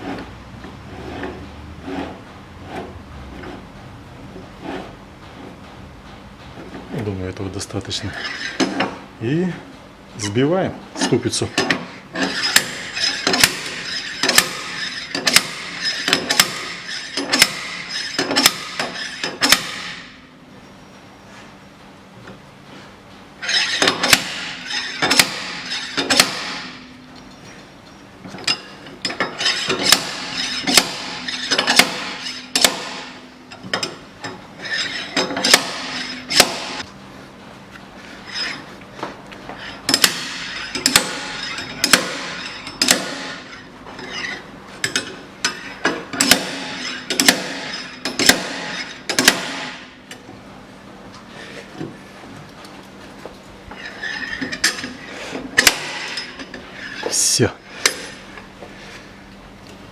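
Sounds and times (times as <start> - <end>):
slide hammer metallic clanks: 11.0 - 20.2, 23.4 - 36.8, 39.9 - 49.9, 55.6 - 57.0.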